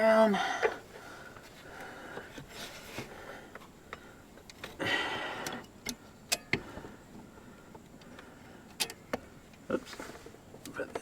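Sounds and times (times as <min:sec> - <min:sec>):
scraping rustle: 0:02.3 - 0:03.2.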